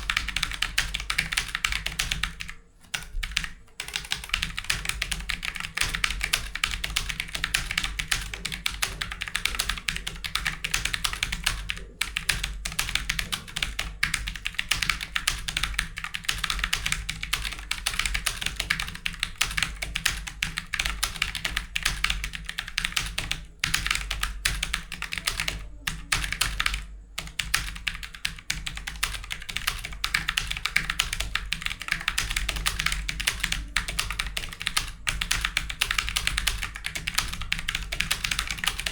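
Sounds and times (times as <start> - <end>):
fast typing on a keyboard: 0.0 - 38.9.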